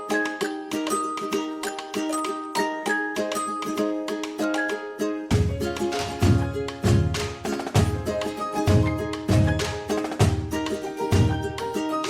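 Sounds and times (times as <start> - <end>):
background music with drum beat: 5.3 - 12.0.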